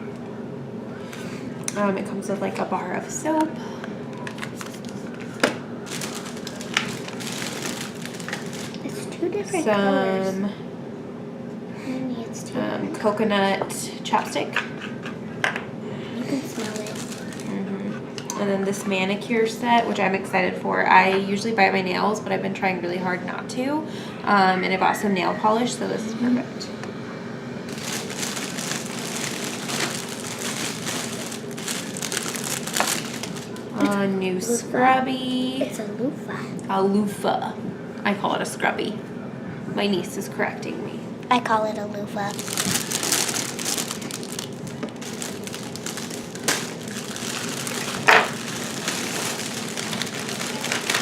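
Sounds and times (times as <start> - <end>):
plastic wrapping crinkling: 4.1 - 9.1, 16.3 - 17.6, 27.7 - 34.0, 42.3 - 51.0.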